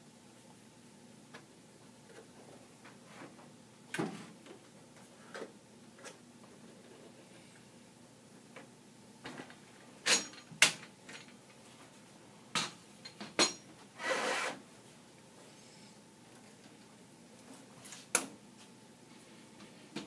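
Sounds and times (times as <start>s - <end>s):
short scrape: 14.0s - 14.6s.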